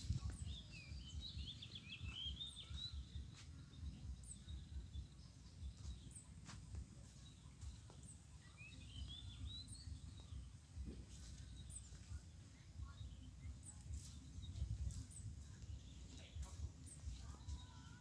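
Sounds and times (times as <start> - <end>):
bird twittering: 0.1 - 6.2
high bird chirps: 0.1 - 6.5.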